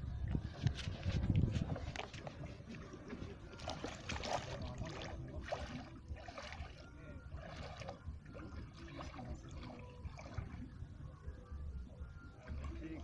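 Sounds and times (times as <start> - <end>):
wind on microphone: 0.0 - 6.6
water splashing against boat: 0.0 - 11.1, 12.0 - 13.0.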